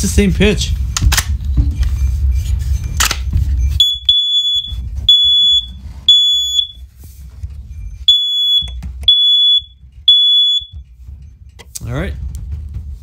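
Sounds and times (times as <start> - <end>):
low rumbling noise: 0.0 - 13.0
smoke alarm beeping: 3.6 - 6.9, 8.0 - 10.9.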